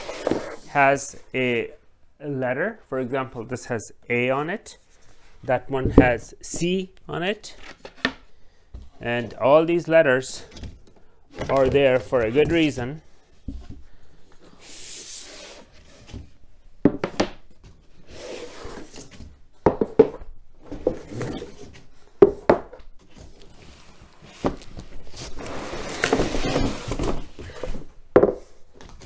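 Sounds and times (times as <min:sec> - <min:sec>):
sliding and rustling panels: 0:22.9 - 0:29.0.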